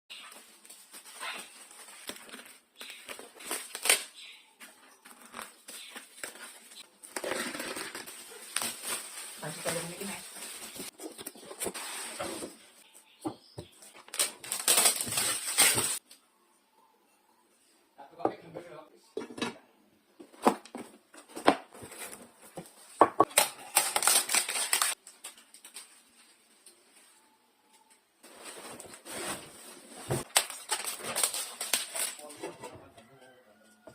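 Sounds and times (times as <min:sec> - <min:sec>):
packaging rustling and crinkling: 0:00.2 - 0:12.8, 0:13.7 - 0:16.0, 0:21.8 - 0:27.0, 0:28.2 - 0:32.5.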